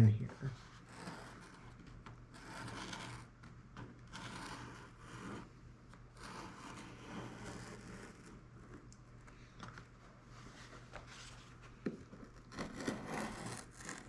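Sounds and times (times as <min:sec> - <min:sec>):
razor saw cutting balsa: 0:12.5 - 0:14.0.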